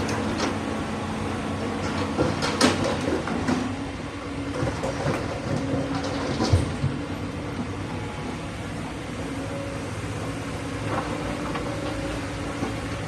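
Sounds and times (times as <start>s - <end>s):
diesel engine running: 0.0s - 13.0s
metallic clanks and knocks: 1.8s - 3.7s.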